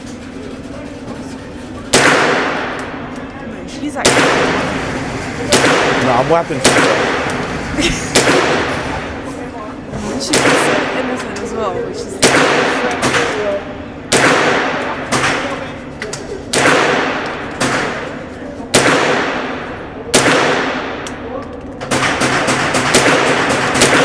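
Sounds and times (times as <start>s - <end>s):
rifle shots with ringing echo: 1.9s - 3.1s, 4.0s - 7.5s, 8.1s - 9.2s, 10.3s - 11.2s, 12.2s - 15.7s, 16.4s - 21.2s, 21.8s - 24.0s.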